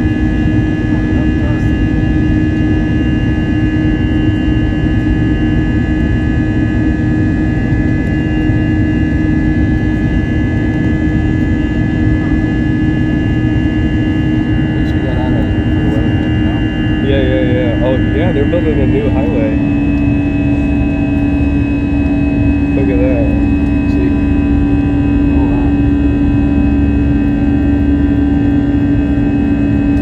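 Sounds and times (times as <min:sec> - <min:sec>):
jet engine cabin rumble: 0:00.0 - 0:30.0
high whining tones: 0:10.8 - 0:30.0
faint voice: 0:14.6 - 0:19.6, 0:25.3 - 0:25.8.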